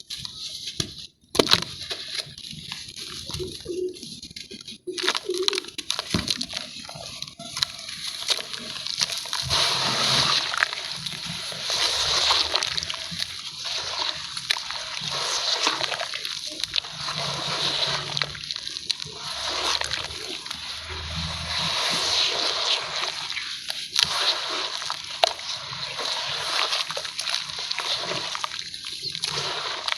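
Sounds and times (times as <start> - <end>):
small crisp crunches: 0.0 - 29.9
water sloshing and splashing: 7.5 - 29.9.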